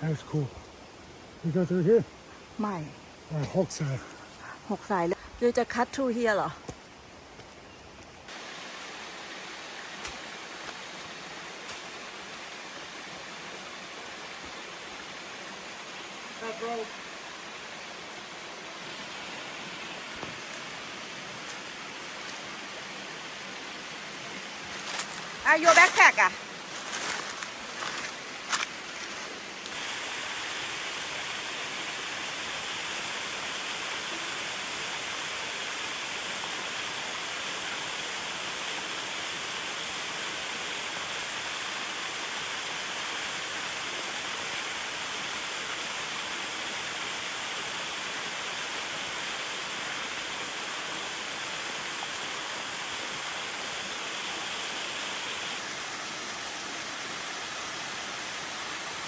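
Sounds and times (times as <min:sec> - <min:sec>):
waterfall rushing: 0:08.3 - 0:59.0.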